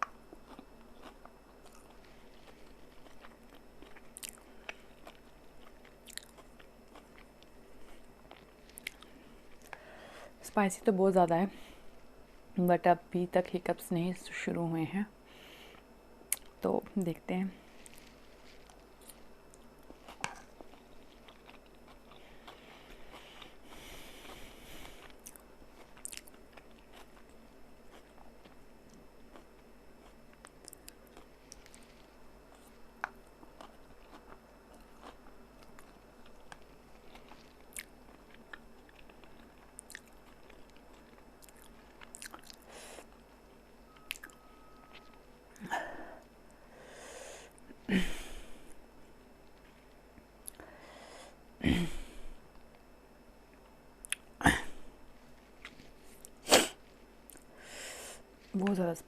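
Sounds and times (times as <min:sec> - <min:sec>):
faint chewing of noodles: 0:00.0 - 0:10.3, 0:17.6 - 0:47.9, 0:55.1 - 0:58.6.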